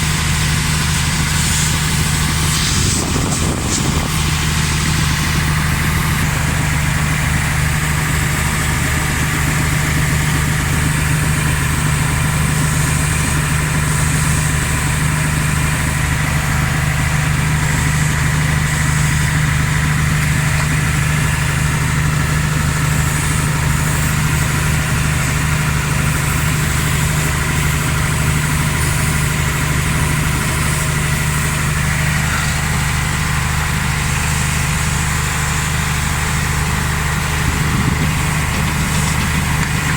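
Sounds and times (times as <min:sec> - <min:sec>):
truck diesel engine idling: 0:00.0 - 0:39.9.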